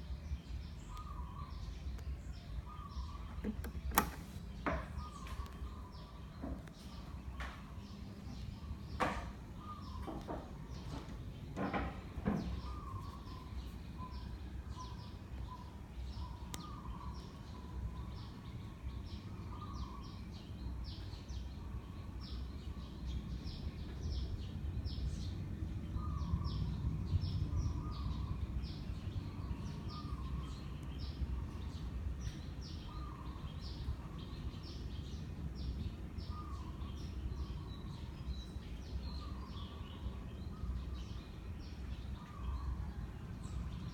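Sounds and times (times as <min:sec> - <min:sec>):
ceiling fan rumble: 0:00.0 - 0:43.9
small birds chirping: 0:00.0 - 0:43.9.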